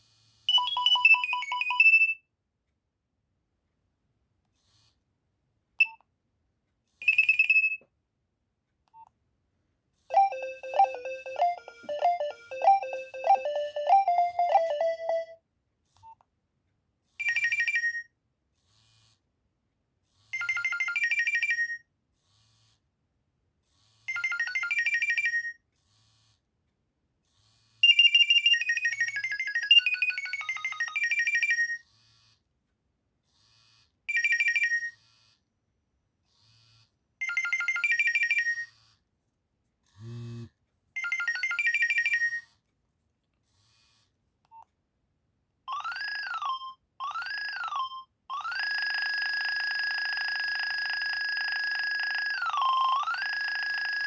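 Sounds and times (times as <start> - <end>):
mobile phone ringtones: 0.5 - 2.2, 7.1 - 7.8, 10.1 - 15.4, 24.1 - 25.5, 27.8 - 31.6, 37.2 - 38.6, 41.0 - 42.4, 48.5 - 54.0.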